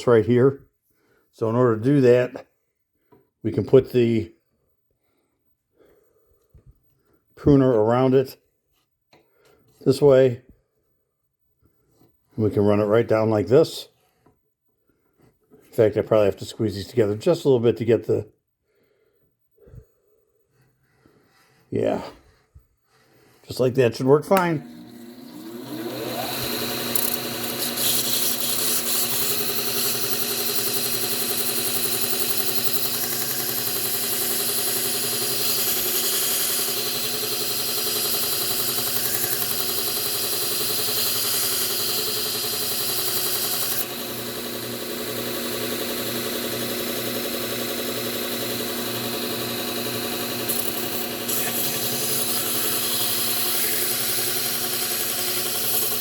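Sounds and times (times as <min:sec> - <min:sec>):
motor hum: 0:24.4 - 0:56.0.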